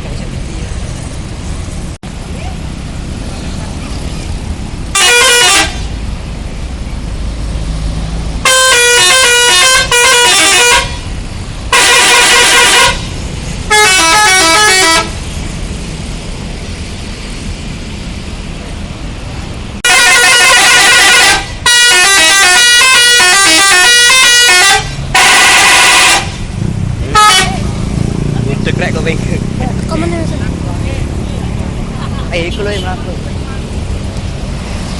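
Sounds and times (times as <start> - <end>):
vehicle engine rumble: 0.0 - 34.9
multi-trumpet bus horn melody: 4.9 - 6.0, 8.4 - 15.2, 19.8 - 26.4, 27.1 - 27.7.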